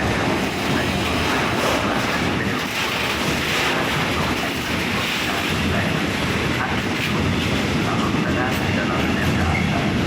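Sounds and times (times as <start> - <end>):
train wheels rushing on rails: 0.0 - 10.0.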